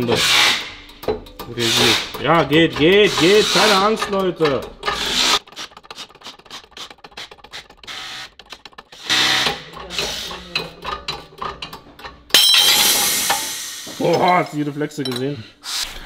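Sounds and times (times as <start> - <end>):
loud metallic clatter with ringing: 12.2 - 14.3.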